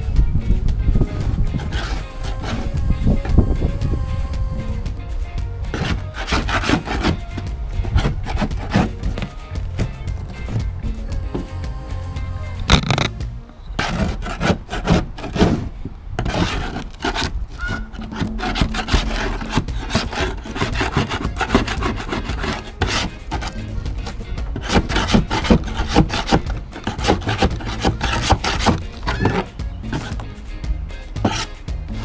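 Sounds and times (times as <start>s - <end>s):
hand scraper scraping wood: 5.7s - 7.2s, 13.8s - 23.6s, 24.6s - 30.2s.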